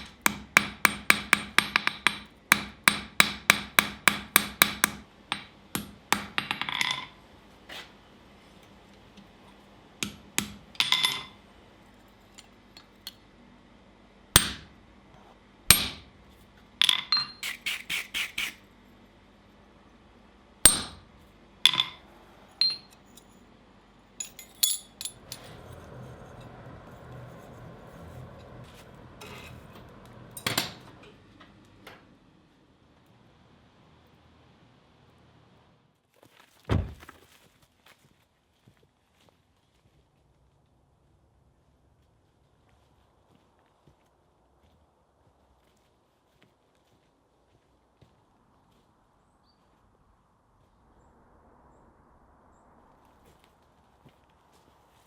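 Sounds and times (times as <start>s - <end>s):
hammer striking steel on anvil: 0.0s - 7.2s, 10.0s - 11.4s, 14.4s - 14.8s, 15.7s - 16.2s, 20.6s - 21.1s, 21.7s - 22.0s, 22.6s - 23.3s
steady low noise: 48.5s - 54.4s.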